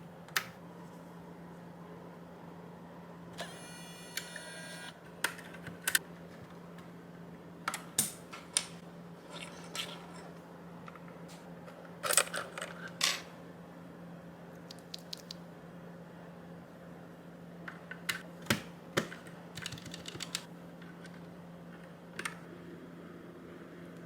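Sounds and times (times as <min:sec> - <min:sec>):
plastic keyboard clicks: 0:18.5 - 0:20.5
keyboard parts rattling: 0:19.0 - 0:20.5.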